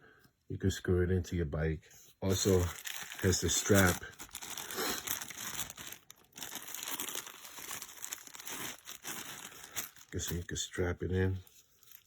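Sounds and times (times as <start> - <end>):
plastic packaging crinkling: 2.3 - 10.6, 11.4 - 12.0.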